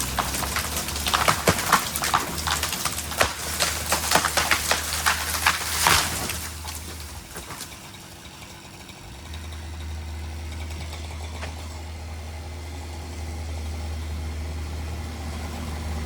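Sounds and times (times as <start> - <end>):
engine idling: 0.0 - 16.0.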